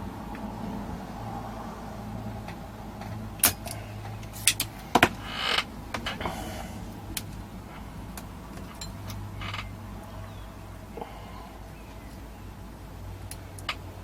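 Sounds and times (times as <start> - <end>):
low steady hum: 0.0 - 14.0
creaking scrape: 3.0 - 7.9, 8.5 - 9.7.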